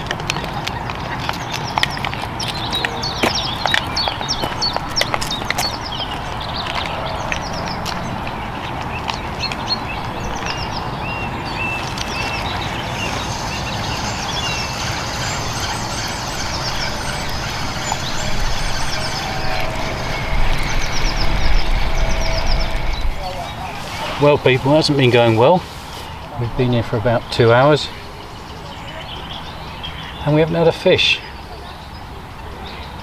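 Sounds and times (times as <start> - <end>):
songbirds chirping and trilling: 0.0 - 33.0
low background rush: 0.8 - 31.0.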